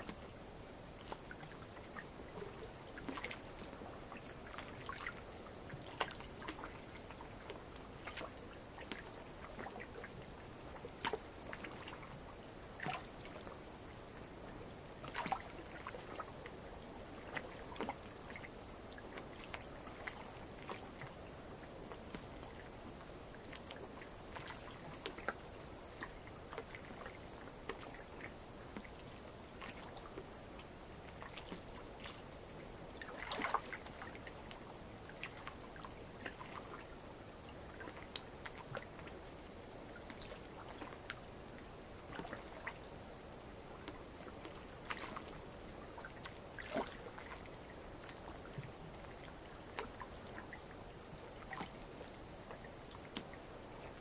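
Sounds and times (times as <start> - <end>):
insects trilling: 0.0 - 54.0
waves lapping against rock: 44.2 - 54.0.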